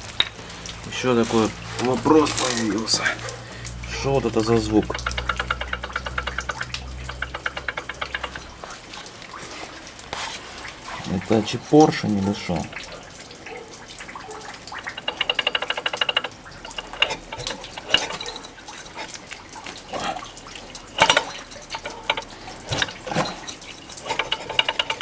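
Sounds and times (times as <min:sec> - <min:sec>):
scooter engine clicking when cranked: 0:04.7 - 0:08.6, 0:14.7 - 0:19.2, 0:20.8 - 0:25.0.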